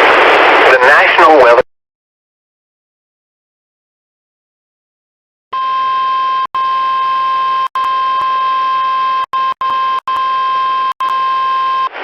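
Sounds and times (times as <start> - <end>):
radio hiss: 0.0 - 1.6.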